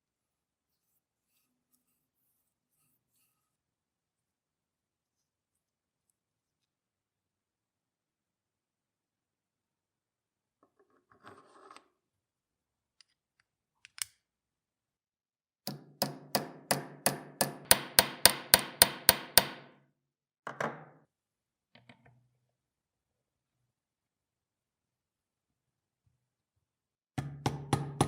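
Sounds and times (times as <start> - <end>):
knock: 27.2 - 28.0.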